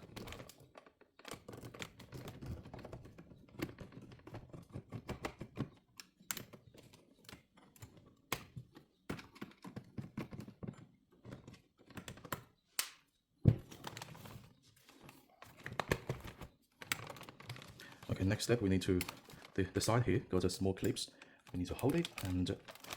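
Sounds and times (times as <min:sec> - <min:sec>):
clicks and taps on plastic parts: 0:00.0 - 0:14.2, 0:15.4 - 0:18.1, 0:18.8 - 0:19.6.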